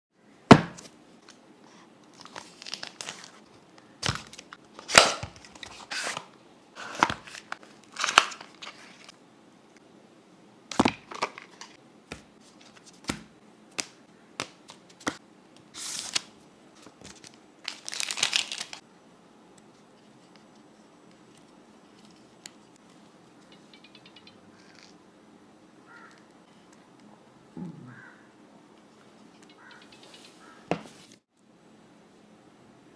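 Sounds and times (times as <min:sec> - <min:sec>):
packaging tearing and crinkling: 0:02.2 - 0:03.4, 0:06.8 - 0:09.1, 0:17.1 - 0:18.8.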